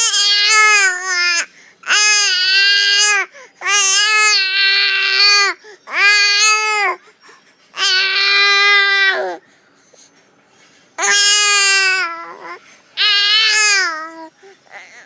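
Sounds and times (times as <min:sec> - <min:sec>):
baby breathing: 0:09.3 - 0:11.0.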